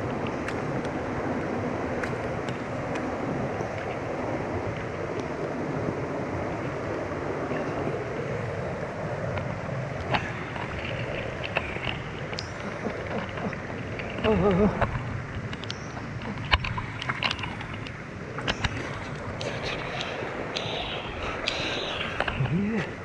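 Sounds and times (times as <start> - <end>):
stream water rushing: 0.0 - 23.0
faint small ticks and knocks: 9.3 - 20.7.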